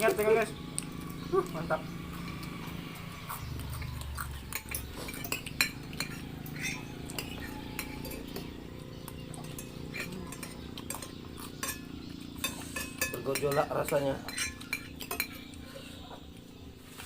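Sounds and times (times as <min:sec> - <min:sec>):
steady low hum: 0:00.0 - 0:17.0
cutlery clinking on a plate: 0:04.2 - 0:08.6, 0:09.3 - 0:15.6.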